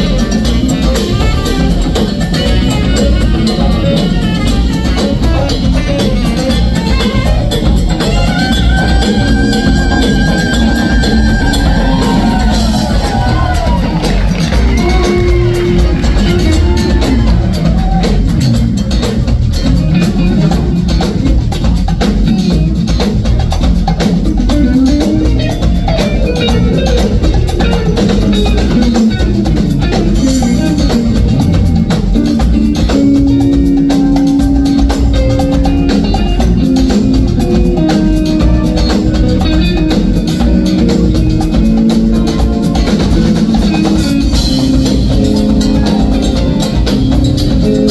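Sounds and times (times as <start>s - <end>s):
horn band playing: 0.0s - 21.3s, 27.6s - 47.9s
drum kit beat: 0.0s - 47.9s.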